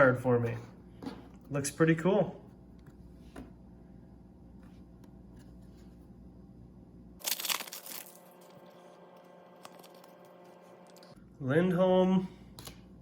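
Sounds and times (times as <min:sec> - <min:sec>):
foil wrapper tearing and crinkling: 0:07.2 - 0:08.6.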